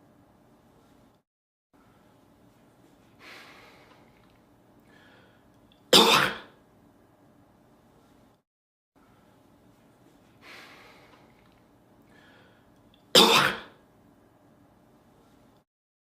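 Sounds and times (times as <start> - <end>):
breathy sound: 4.9 - 5.5, 12.1 - 12.7
man coughing: 6.0 - 6.5, 13.2 - 13.8.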